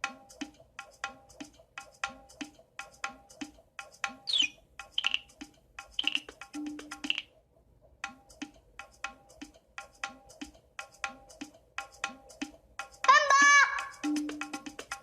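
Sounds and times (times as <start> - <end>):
percussive dance music: 9.4 - 15.0.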